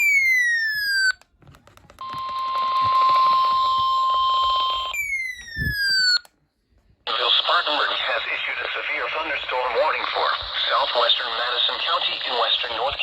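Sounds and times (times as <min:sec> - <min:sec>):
steady alarm tone: 0:02.0 - 0:06.2
radio static hiss: 0:07.1 - 0:13.0.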